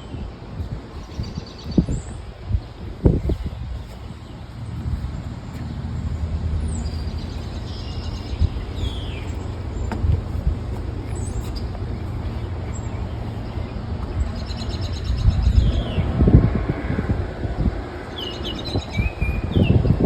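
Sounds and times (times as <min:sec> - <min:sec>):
low rumble: 0:00.0 - 0:18.2
bird chirps: 0:06.6 - 0:10.0.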